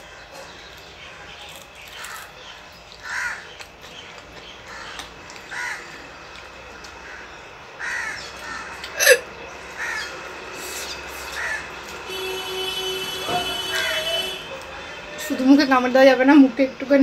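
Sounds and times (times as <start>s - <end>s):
person hiccuping: 9.0s - 9.3s.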